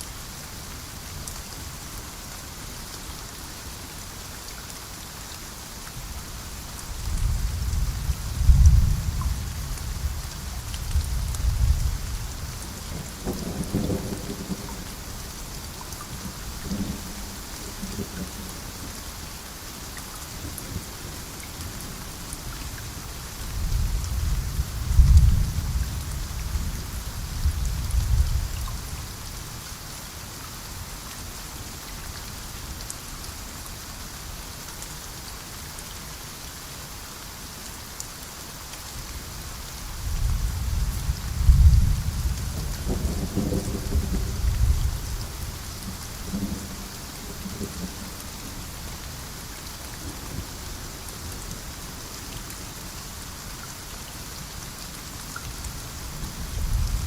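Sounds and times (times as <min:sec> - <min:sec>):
heavy rain: 0:00.0 - 0:57.0
thunder rumbling: 0:11.0 - 0:14.9, 0:40.1 - 0:45.5.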